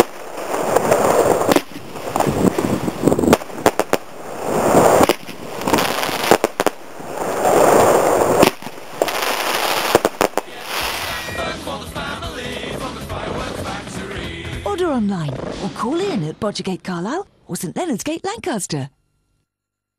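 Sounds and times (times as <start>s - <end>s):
firework launch shots: 0.0s - 11.3s
firework bursts crackling: 0.0s - 11.4s.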